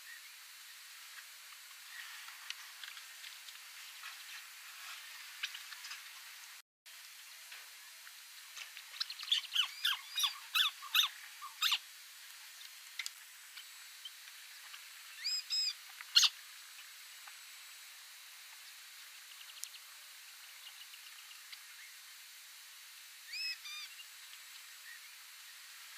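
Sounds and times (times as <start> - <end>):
bird chattering calls: 9.0 - 11.8, 15.2 - 16.4, 23.3 - 24.0.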